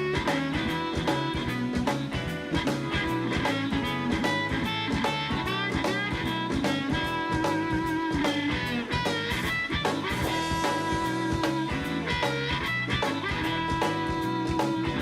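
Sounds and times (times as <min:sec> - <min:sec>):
drum kit beat: 0:00.0 - 0:15.0
guitar: 0:00.0 - 0:15.0.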